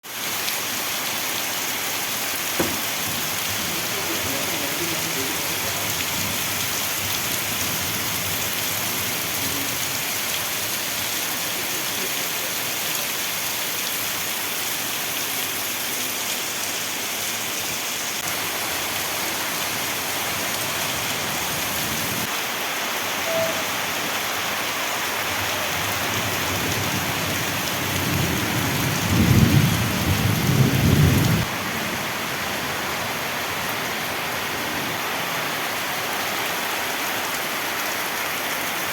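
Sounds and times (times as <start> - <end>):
heavy rain falling: 0.0 - 38.9
sharp tap: 2.6 - 2.9
thunder rumbling: 26.5 - 31.9.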